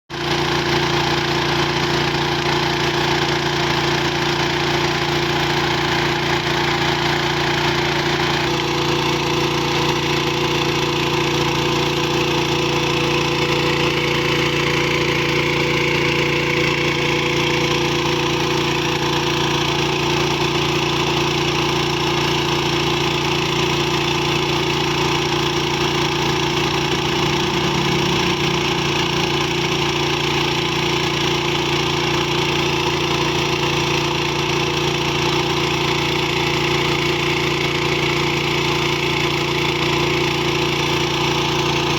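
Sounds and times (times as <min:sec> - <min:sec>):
diesel engine driving water pump: 0:00.1 - 0:41.9.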